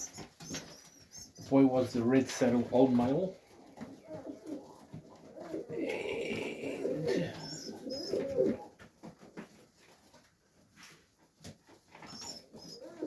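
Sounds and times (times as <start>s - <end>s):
pigeons cooing: 3.4s - 8.8s, 12.0s - 13.0s.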